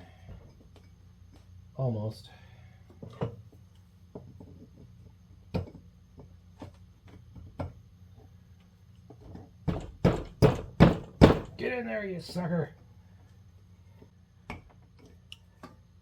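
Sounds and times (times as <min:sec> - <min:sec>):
sharp metal knocks: 0:09.7 - 0:11.6.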